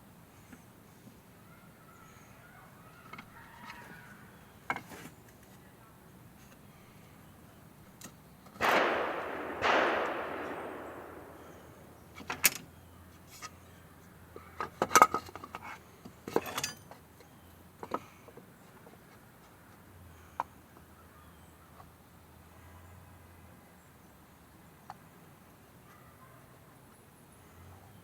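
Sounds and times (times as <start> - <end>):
gunshots with long echo: 8.6 - 12.2.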